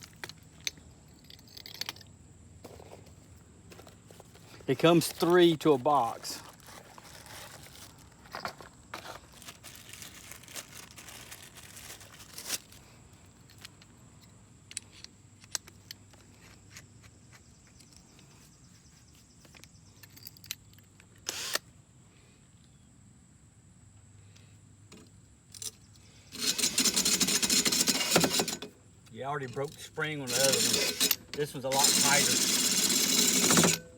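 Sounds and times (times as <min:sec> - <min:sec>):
small clicks and handling noises: 0:09.4 - 0:18.4
sharpener grinding mower blade: 0:26.4 - 0:28.6, 0:30.2 - 0:33.9
drill running loudly: 0:30.3 - 0:31.1, 0:31.7 - 0:33.8.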